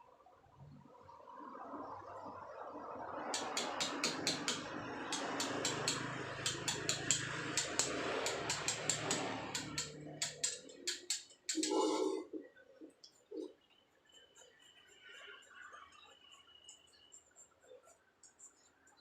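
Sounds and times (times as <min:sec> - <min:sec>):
continuous rough noise: 0:01.9 - 0:13.5
hammer tapping chisel on stone: 0:03.4 - 0:11.8.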